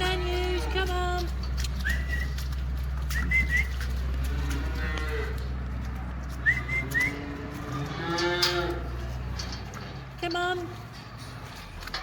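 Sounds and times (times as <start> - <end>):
cattle mooing: 0.0 - 1.3, 3.8 - 10.1.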